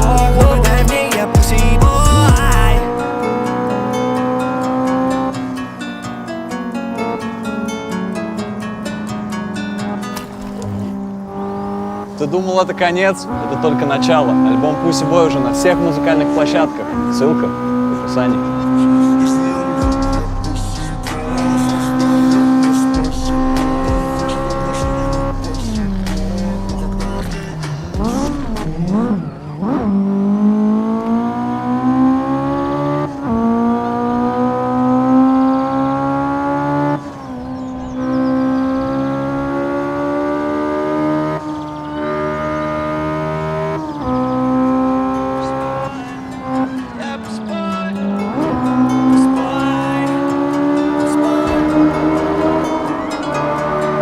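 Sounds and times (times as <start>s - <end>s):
car engine revving and accelerating: 0.0s - 54.0s
wavering squeal: 48.3s - 54.0s.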